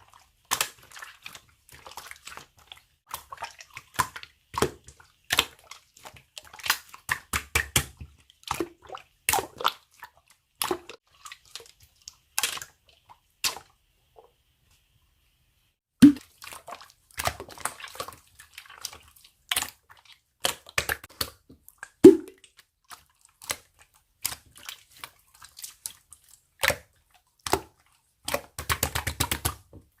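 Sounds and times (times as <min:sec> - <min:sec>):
slime squishing wet pops: 0:06.4 - 0:08.7.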